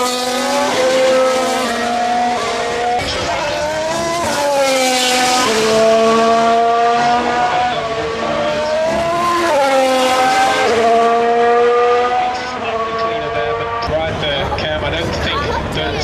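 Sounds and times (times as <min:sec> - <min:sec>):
racing car engines at speed: 0:00.0 - 0:16.0.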